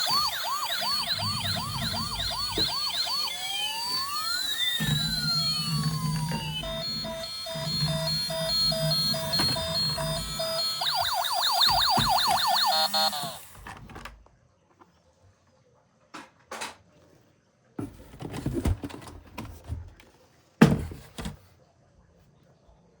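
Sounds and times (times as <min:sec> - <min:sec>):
toy siren yelping: 0:00.0 - 0:13.5.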